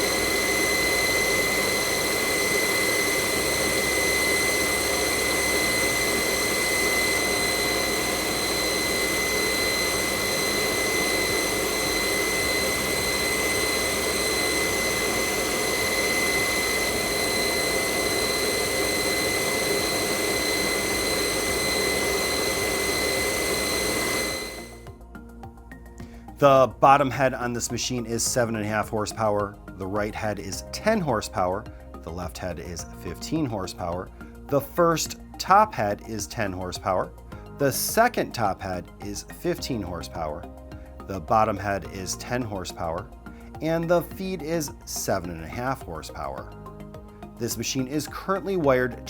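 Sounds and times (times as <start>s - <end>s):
moulder machine whine and hum: 0.0s - 25.0s.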